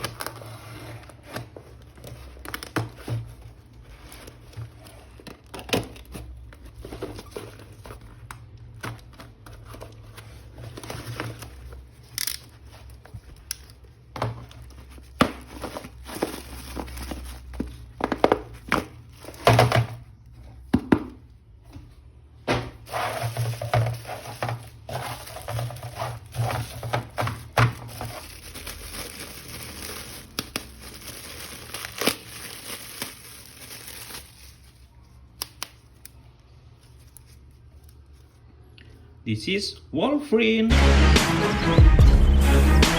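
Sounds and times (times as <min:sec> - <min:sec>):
plastic packaging rustling: 0:00.0 - 0:20.7, 0:22.7 - 0:38.6
plastic packaging clicks: 0:12.0 - 0:12.6, 0:26.6 - 0:34.4, 0:35.3 - 0:36.2.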